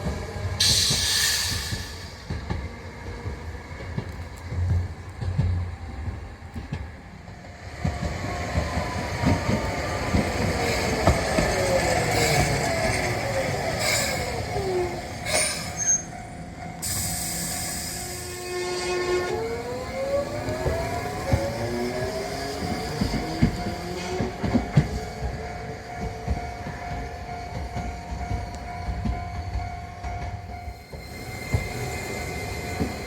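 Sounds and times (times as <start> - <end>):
tram electric motors whining: 0.0 - 33.0
loud hiss: 0.6 - 2.2.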